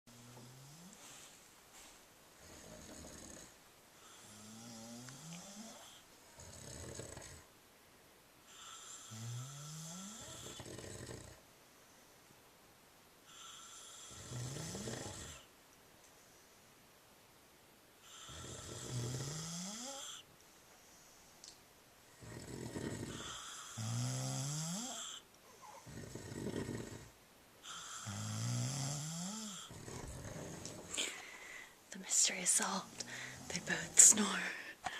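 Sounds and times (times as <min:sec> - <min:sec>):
people snoring: 0:02.4 - 0:07.5, 0:08.5 - 0:11.4, 0:13.3 - 0:15.5, 0:18.0 - 0:20.3, 0:22.1 - 0:34.9
pitched snore rising: 0:22.2 - 0:25.2, 0:25.8 - 0:27.1, 0:27.7 - 0:31.2.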